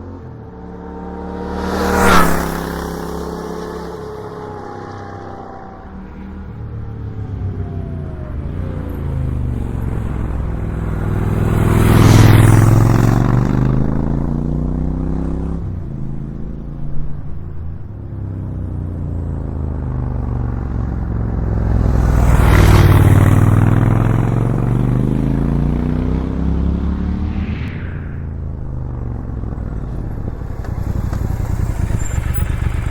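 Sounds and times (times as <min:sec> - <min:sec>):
motorcycle engine rumbling: 0:00.0 - 0:15.0, 0:26.8 - 0:32.9.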